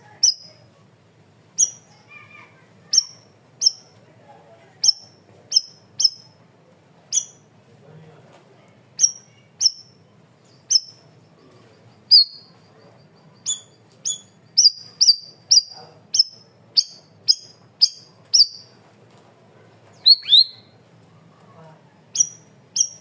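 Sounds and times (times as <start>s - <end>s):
bird singing high whistled notes: 1.6s - 1.8s, 4.8s - 6.3s, 7.1s - 7.4s, 9.0s - 11.0s, 12.1s - 18.7s, 20.0s - 20.8s, 22.2s - 23.0s
bird sweeping call: 20.0s - 20.7s.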